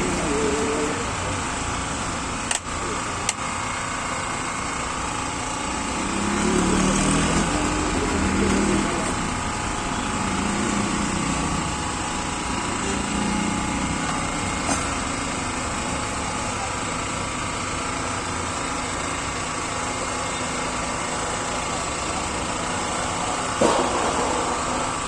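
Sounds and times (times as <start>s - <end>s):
small engine droning: 0.0s - 25.0s
sharp click: 2.5s - 2.7s.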